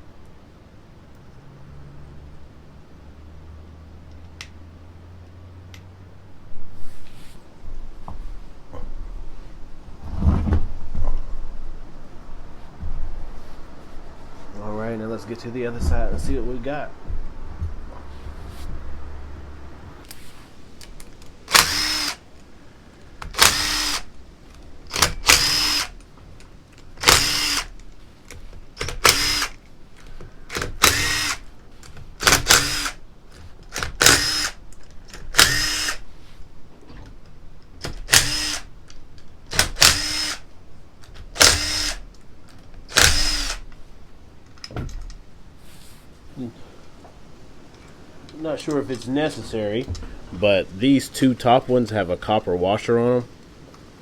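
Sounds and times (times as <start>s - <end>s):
cordless drill spinning bursts: 21.4s - 22.3s, 23.2s - 24.2s, 24.9s - 26.0s, 27.0s - 27.8s, 28.8s - 29.6s, 30.5s - 31.5s, 32.2s - 33.0s, 33.8s - 34.6s, 35.3s - 36.0s, 38.0s - 38.8s, 39.5s - 40.5s, 41.3s - 42.0s, 42.9s - 43.6s.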